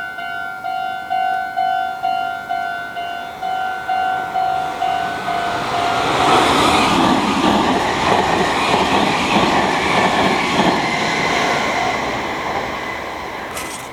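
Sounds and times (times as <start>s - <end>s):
crossing warning bell: 0.0s - 9.1s, 11.4s - 13.9s
train wheels rushing on rails: 2.9s - 13.9s.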